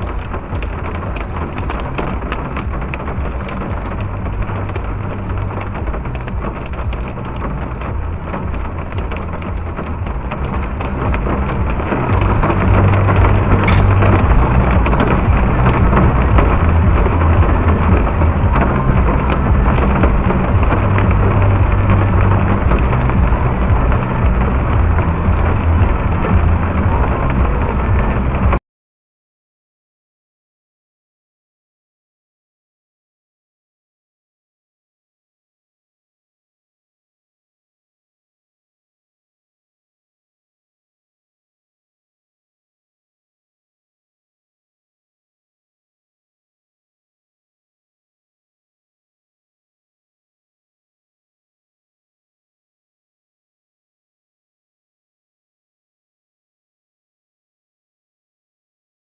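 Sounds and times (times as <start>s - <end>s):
hail and rain pelting: 0.0s - 28.6s
low rumble: 0.0s - 28.6s.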